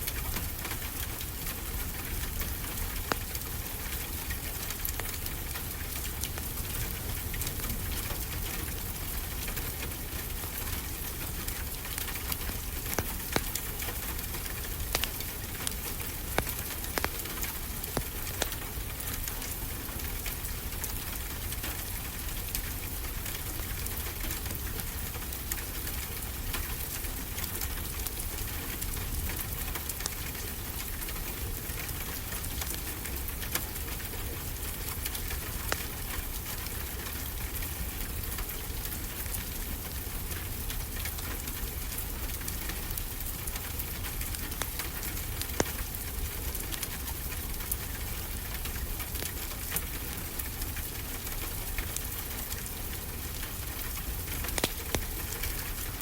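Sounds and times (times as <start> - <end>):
steady rain: 0.0 - 56.0
wood fire crackling: 0.0 - 56.0.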